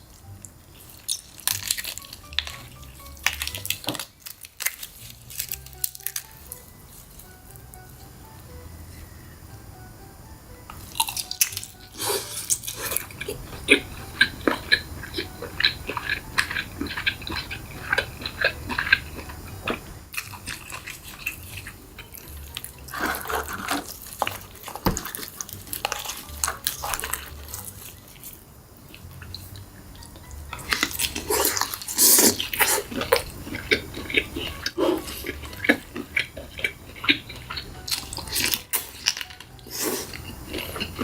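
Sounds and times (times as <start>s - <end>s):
wet sucking and chewing: 0.0s - 6.4s, 10.8s - 41.0s
crab shell cracking: 0.8s - 6.4s, 30.6s - 41.0s.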